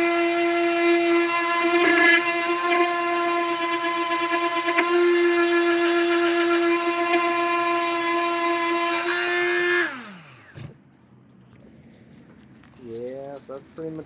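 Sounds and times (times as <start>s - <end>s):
electric sander running: 0.0s - 10.6s
sander motor winding down: 0.0s - 10.6s.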